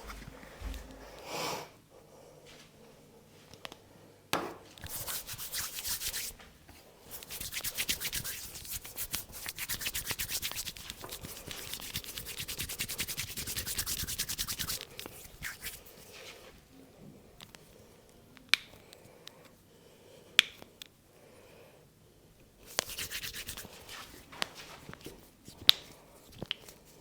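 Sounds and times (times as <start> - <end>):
hands rubbing hair and scalp: 4.8 - 16.6, 22.6 - 27.0.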